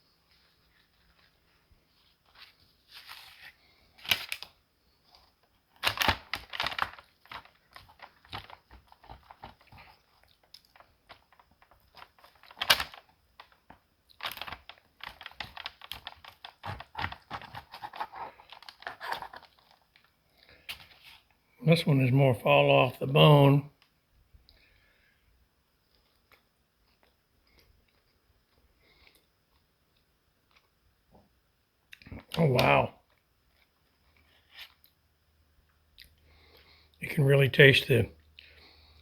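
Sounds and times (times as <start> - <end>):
paper crinkling and rustling: 0.3 - 21.3
meat tearing: 5.2 - 20.7.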